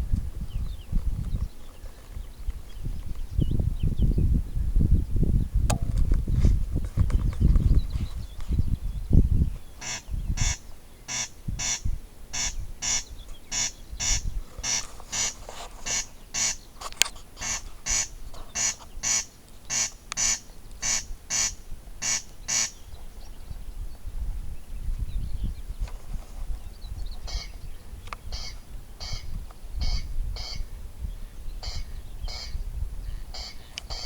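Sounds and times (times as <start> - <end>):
corncrake calling: 9.6 - 23.0, 27.1 - 30.8, 31.6 - 34.0.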